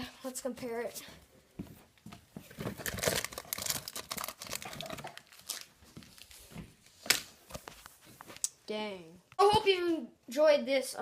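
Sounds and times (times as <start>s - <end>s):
chip bag crinkling: 2.6s - 6.4s.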